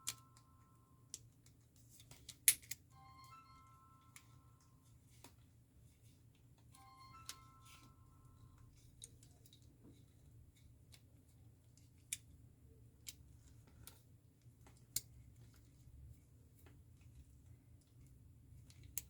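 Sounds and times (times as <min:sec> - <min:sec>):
low background hum: 0:00.0 - 0:19.0
clicks of small metal lock parts: 0:02.0 - 0:02.8.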